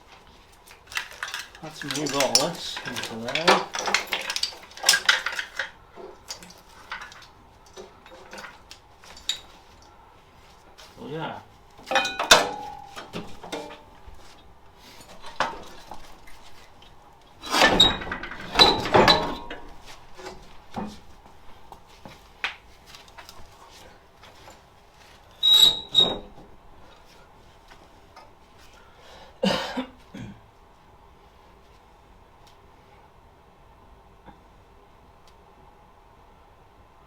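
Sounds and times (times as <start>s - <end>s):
metal tools clanking: 0.7s - 10.0s, 10.7s - 21.7s.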